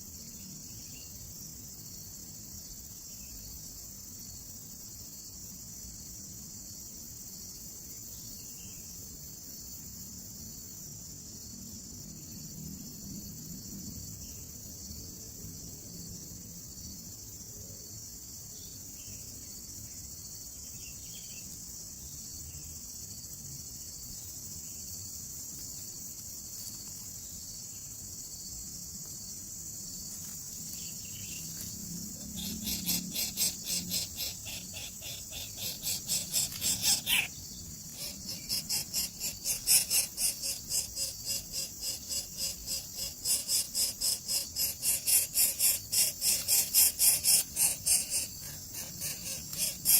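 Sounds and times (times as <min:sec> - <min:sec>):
insects hissing: 0:00.0 - 0:49.9
nestlings begging calls: 0:32.2 - 0:49.9.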